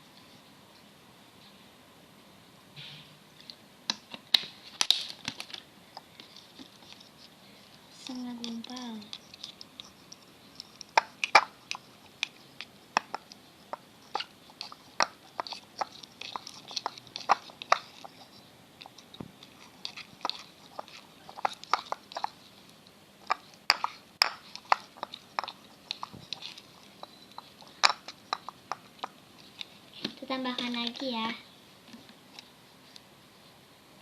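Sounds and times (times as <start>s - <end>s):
slime stirred with spoon: 6.0s - 31.4s.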